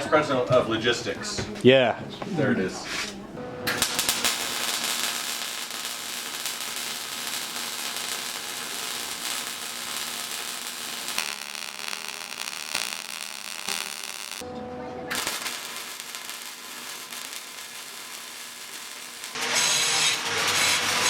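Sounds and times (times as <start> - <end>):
welding crackling hiss: 3.7 - 14.4, 15.1 - 21.0.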